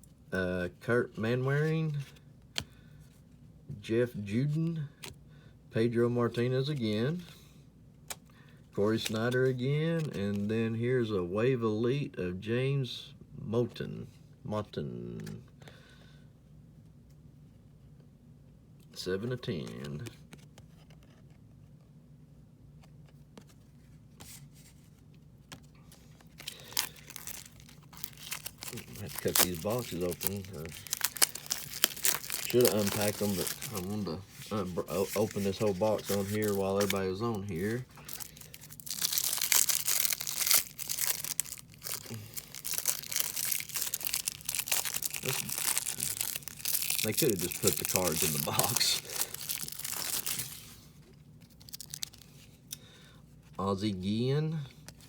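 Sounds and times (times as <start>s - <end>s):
faint steady hum: 0.0s - 55.0s
cardboard packaging rustling: 23.4s - 50.8s, 51.4s - 52.5s
cardboard packaging clicks: 26.2s - 33.9s, 35.2s - 50.6s.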